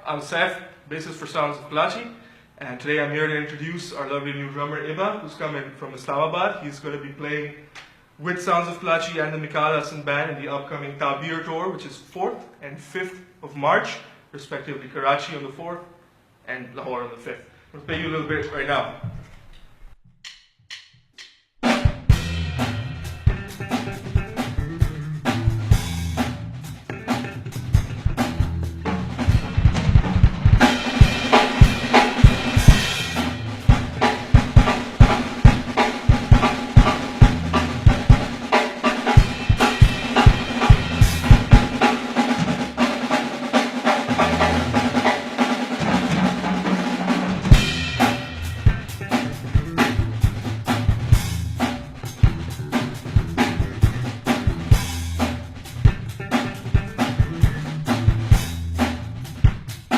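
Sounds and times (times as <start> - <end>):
drum kit playing fast groove: 21.6 - 59.9.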